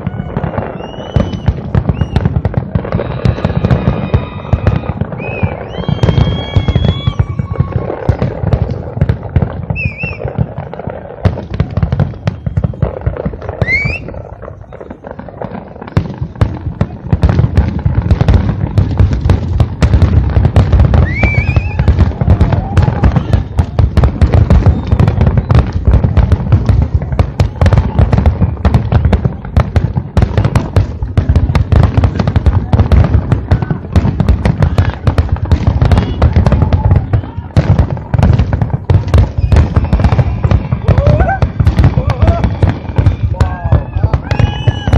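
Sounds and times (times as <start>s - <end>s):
firework rising whistle: 0.0s - 8.6s, 9.7s - 10.8s, 11.4s - 15.1s, 20.9s - 25.8s, 39.1s - 44.9s
fireworks bangs and crackles: 0.0s - 44.9s.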